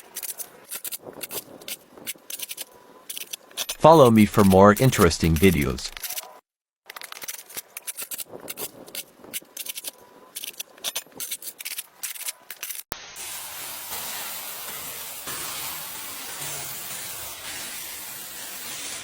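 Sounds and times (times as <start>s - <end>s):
pressure washer spraying: 13.2s - 19.0s.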